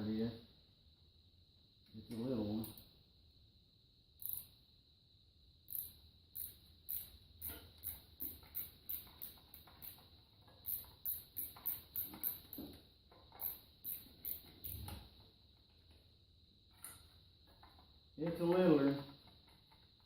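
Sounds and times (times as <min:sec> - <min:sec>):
ratchet wrench clicking: 0:04.2 - 0:04.5, 0:05.7 - 0:12.6, 0:13.3 - 0:14.9.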